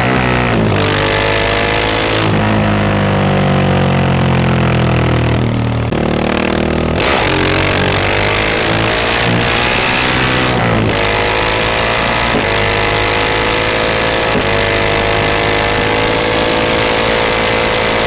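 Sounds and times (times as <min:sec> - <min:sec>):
motorcycle engine riding: 0:00.0 - 0:18.0.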